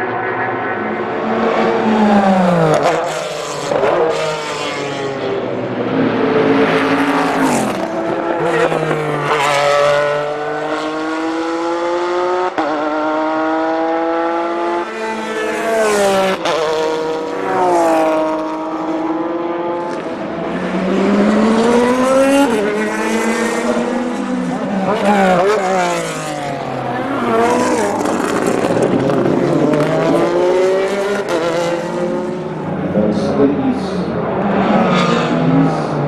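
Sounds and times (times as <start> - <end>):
racing engine revving through gears: 6.1 - 32.5.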